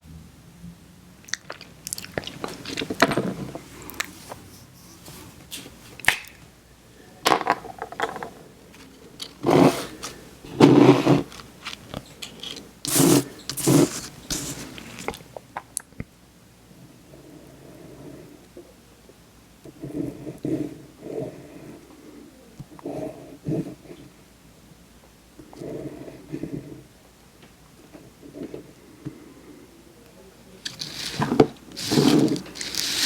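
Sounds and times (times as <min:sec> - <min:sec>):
scraping and crunching: 0:01.3 - 0:04.4, 0:07.5 - 0:15.3, 0:30.6 - 0:33.0.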